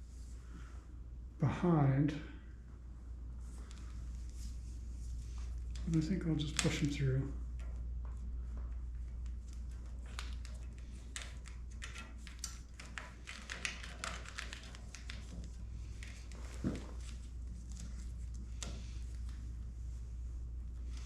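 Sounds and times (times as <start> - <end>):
steady low hum: 0.0 - 21.0
wires tapping and rustling: 3.5 - 21.0.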